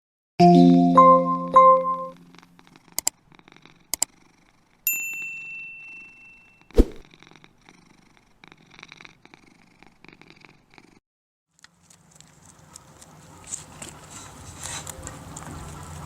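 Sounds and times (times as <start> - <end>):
cat purring: 2.2 - 4.9, 6.8 - 11.0
chime: 4.9 - 6.6.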